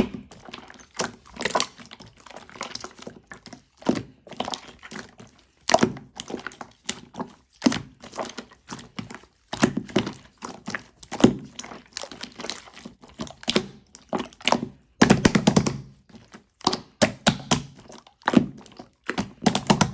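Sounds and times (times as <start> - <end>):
slime clicking and popping: 0.0 - 0.8, 13.4 - 19.9.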